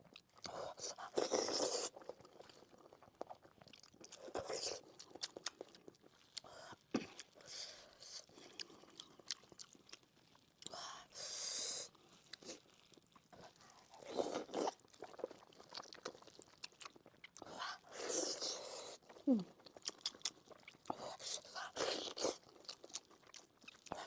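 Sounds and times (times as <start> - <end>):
wet chewing and biting: 0.0 - 10.9, 12.2 - 24.0
mouth smacking and clicks: 19.7 - 20.8.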